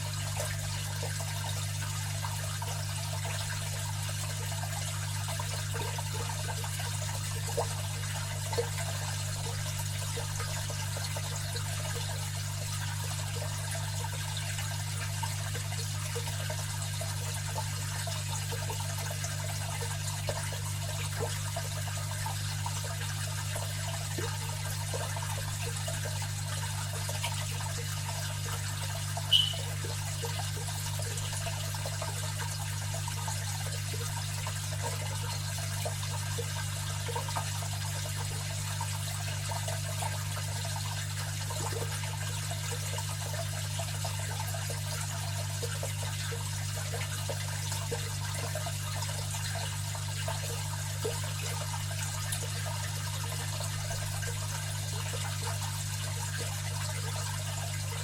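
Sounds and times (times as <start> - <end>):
aquarium filter hum: 0.0 - 58.0
trickle of falling water: 0.0 - 58.0
sharp plink: 29.3 - 29.7.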